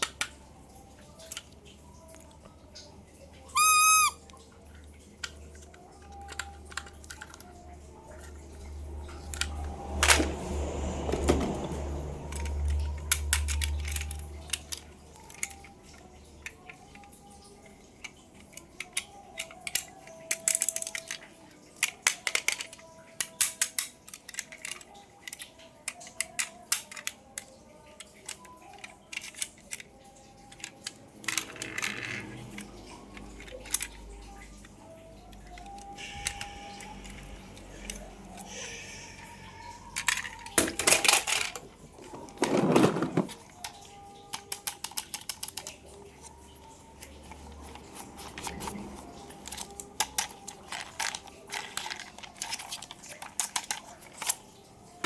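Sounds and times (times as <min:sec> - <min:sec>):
packaging rustling: 0:47.5 - 0:55.0.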